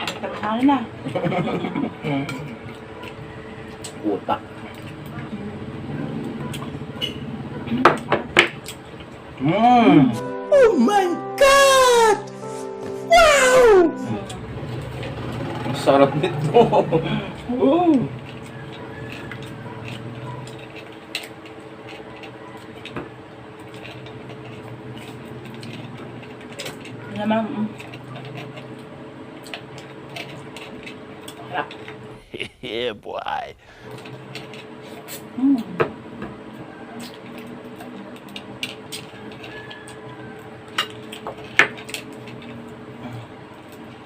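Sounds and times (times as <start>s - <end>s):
steady low hum: 31.8s - 34.6s.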